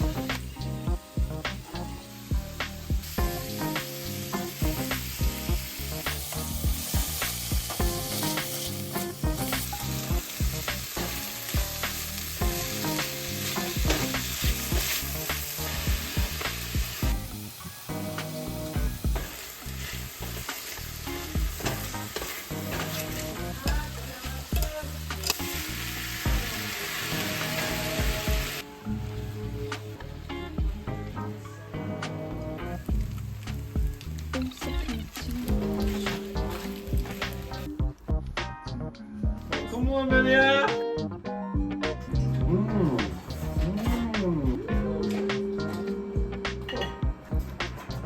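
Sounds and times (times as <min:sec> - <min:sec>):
food sizzling in a pan: 0:00.0 - 0:28.6, 0:32.7 - 0:37.7.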